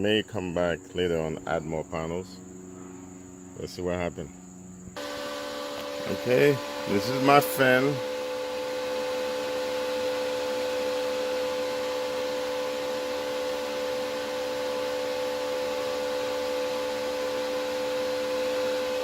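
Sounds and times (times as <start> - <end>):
electric fan whirring: 0.0 - 19.0.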